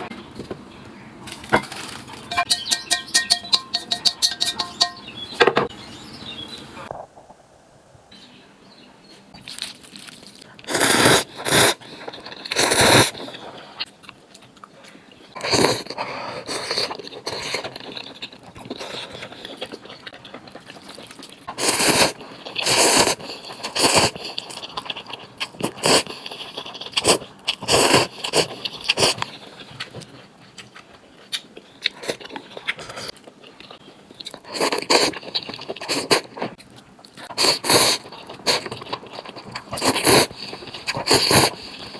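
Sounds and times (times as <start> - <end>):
utensils scraping bowl: 1.5 - 5.1
slurping and biting noodles: 10.7 - 13.8, 15.4 - 30.7, 34.3 - 36.6, 37.2 - 41.9.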